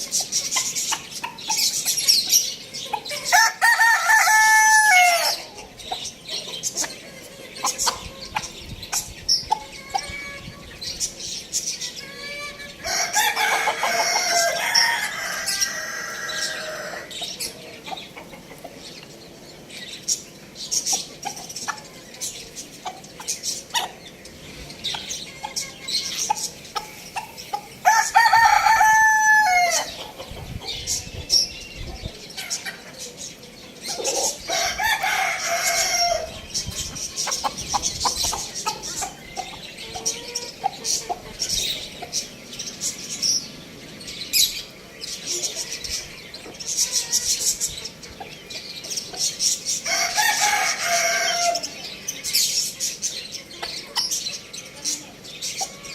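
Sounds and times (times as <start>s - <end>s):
hens clucking: 0.0s - 11.2s, 11.9s - 43.2s
rooster crowing: 3.3s - 5.4s, 12.8s - 17.1s, 27.8s - 29.9s, 34.5s - 36.4s, 49.9s - 51.7s.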